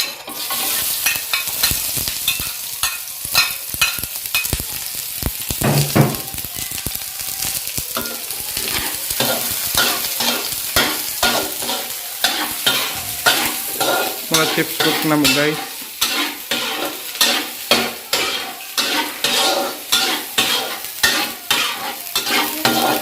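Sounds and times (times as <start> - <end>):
utensil scraping a pan: 0.0 - 2.5, 8.0 - 23.0
garlic and onion sizzling in pan: 0.0 - 23.0.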